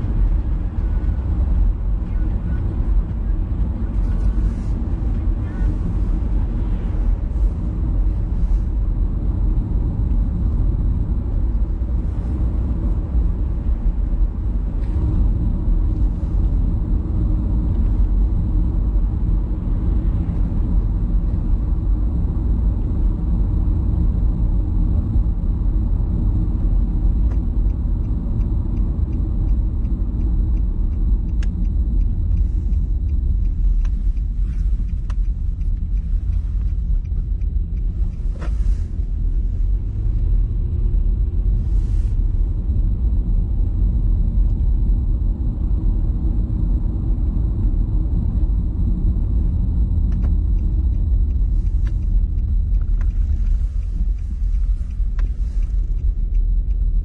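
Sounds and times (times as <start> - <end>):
road vehicle rumble: 0.0 - 57.0
light even ticks: 27.2 - 40.2, 50.0 - 57.0.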